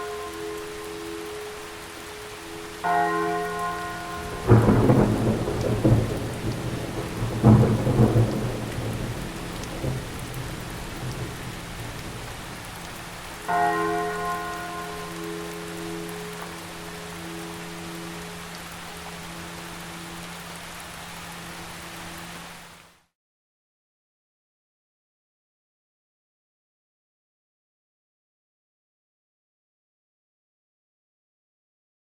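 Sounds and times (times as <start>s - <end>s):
steady rain: 0.0s - 23.1s
church bell tolling: 2.8s - 6.4s, 13.5s - 18.2s
thunderclaps: 4.2s - 12.9s.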